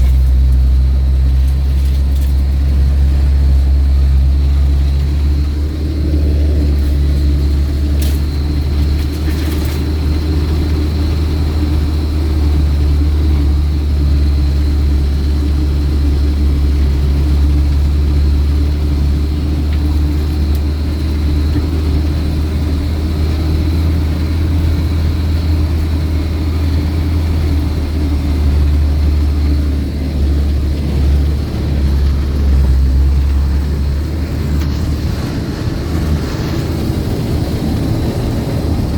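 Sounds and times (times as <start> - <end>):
vehicle engine rumbling: 0.0 - 38.9.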